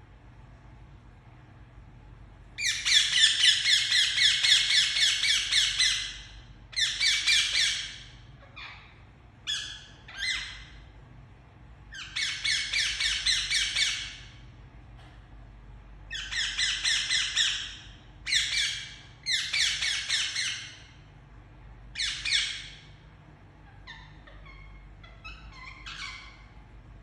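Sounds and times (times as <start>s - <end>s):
parakeet screeching: 2.6s - 10.8s, 11.9s - 14.4s, 16.1s - 20.9s, 21.9s - 23.0s, 23.6s - 26.6s.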